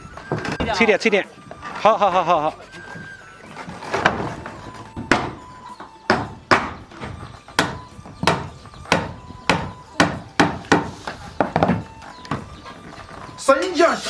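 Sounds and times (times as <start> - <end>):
cleaver chopping bones: 4.0 - 12.5.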